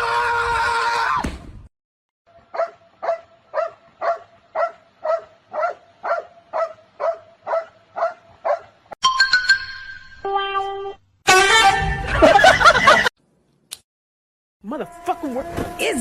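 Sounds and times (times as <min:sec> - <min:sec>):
dog barking: 0:02.5 - 0:08.8.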